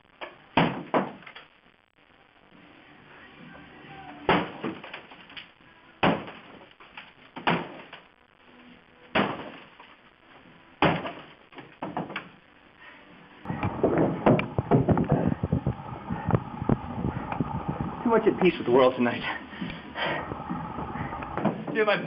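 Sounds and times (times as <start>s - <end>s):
sledgehammer smashing wood: 0.6s - 1.2s, 4.3s - 5.2s, 6.0s - 6.7s, 7.4s - 8.0s, 9.1s - 9.7s, 10.8s - 12.2s.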